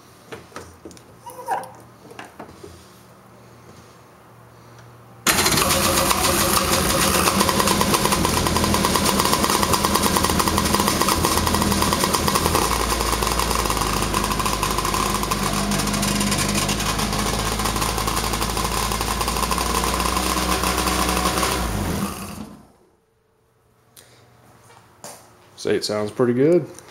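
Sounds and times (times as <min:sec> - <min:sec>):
two-stroke engine running loud: 0:05.3 - 0:22.6.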